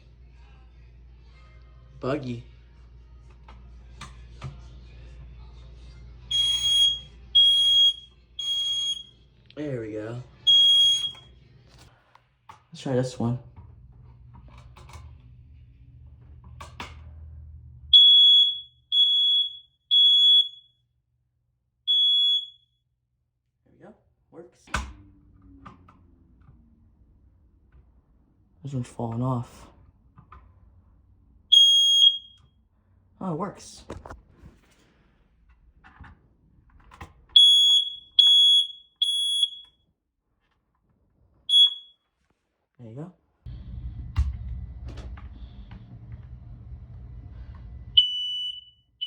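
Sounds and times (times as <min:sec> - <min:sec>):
smoke alarm clicks: 0:06.3 - 0:09.1, 0:10.5 - 0:11.2, 0:18.0 - 0:20.6, 0:21.9 - 0:22.6, 0:31.5 - 0:32.4, 0:37.4 - 0:39.8, 0:41.5 - 0:41.9, 0:48.0 - 0:48.7
smoke alarm beeps: 0:06.3 - 0:09.2, 0:10.5 - 0:11.3, 0:17.9 - 0:20.8, 0:21.9 - 0:22.7, 0:31.5 - 0:32.5, 0:37.4 - 0:39.8, 0:41.5 - 0:42.0, 0:48.0 - 0:49.0.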